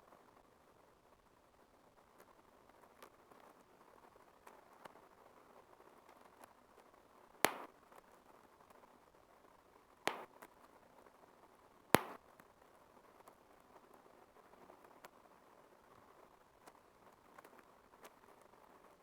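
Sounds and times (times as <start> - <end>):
bubble wrap popping: 7.5 - 7.7, 10.1 - 10.3, 12.0 - 12.2.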